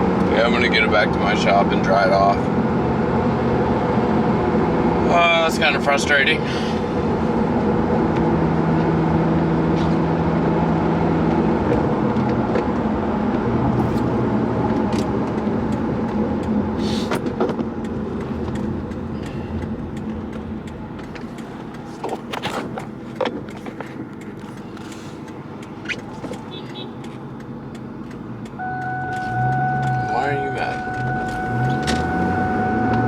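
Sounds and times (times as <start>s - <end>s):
car engine drone: 0.0s - 33.0s
sharp clicks: 14.9s - 30.0s.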